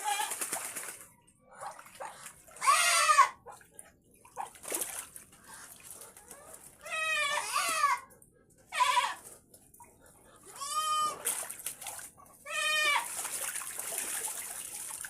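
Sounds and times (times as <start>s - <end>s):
water splashing: 0.0s - 6.9s, 9.7s - 15.0s
farm animals calling: 2.6s - 3.6s, 6.4s - 9.3s, 10.4s - 11.3s, 12.4s - 13.1s.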